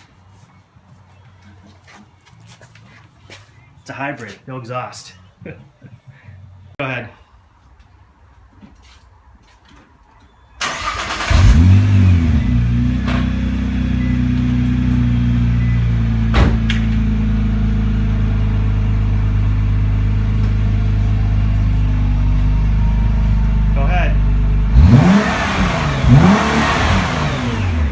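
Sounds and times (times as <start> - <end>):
car engine starting and idling: 10.6 - 27.9.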